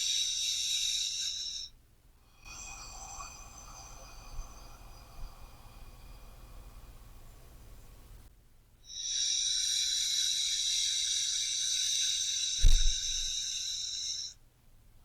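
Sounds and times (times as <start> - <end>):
person breathing deeply: 2.3 - 7.7, 8.9 - 14.3
low thump: 12.7 - 13.0.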